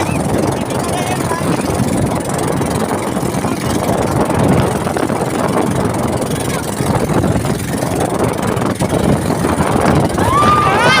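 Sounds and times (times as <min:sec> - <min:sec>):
boat motor running: 0:00.0 - 0:11.0.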